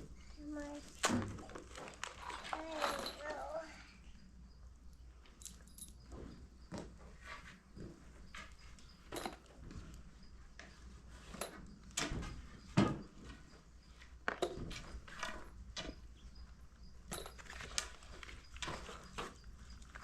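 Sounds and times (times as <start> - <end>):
light knocks and clatter: 5.7 - 16.4.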